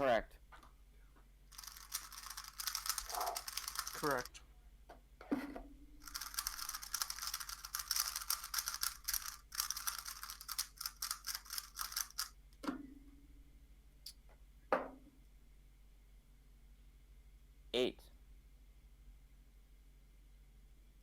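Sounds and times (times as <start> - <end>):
puzzle cube layers clicking: 1.6 - 4.3, 6.0 - 12.3.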